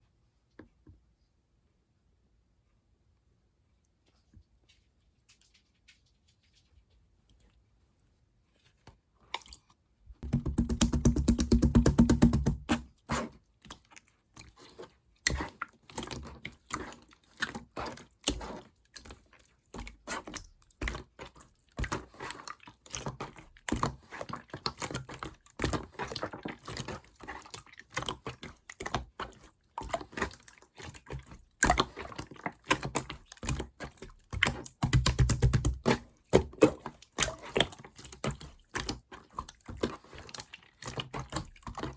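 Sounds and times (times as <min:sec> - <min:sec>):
slime clicking and squishing: 0:09.2 - 0:41.9.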